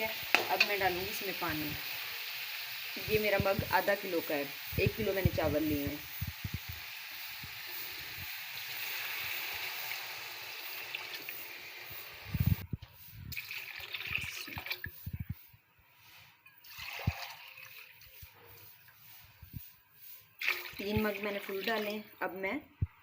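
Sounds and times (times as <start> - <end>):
water pouring into a pot: 6.3 - 12.3, 13.3 - 14.9, 16.6 - 18.2, 20.4 - 22.1.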